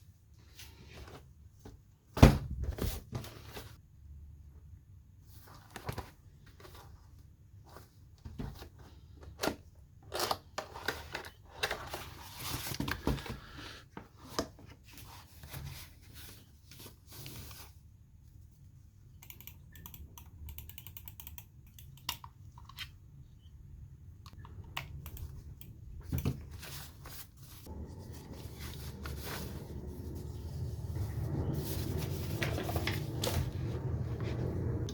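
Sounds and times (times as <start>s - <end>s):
keyboard handling clicks and taps: 24.3s - 26.4s.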